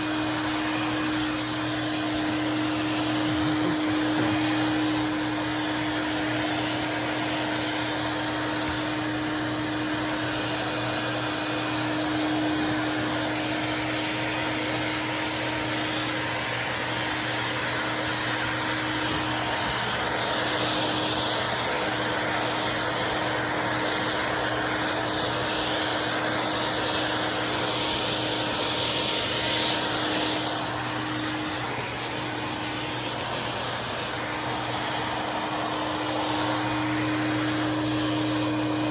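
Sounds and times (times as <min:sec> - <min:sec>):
high hiss of air: 0:00.0 - 0:14.0
vacuum cleaner running: 0:00.0 - 0:38.9.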